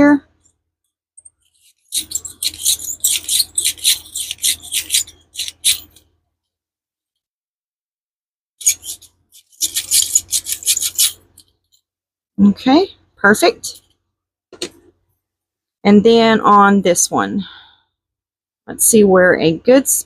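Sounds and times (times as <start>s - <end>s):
hand tool boring through resin: 1.4s - 6.0s, 8.6s - 11.4s.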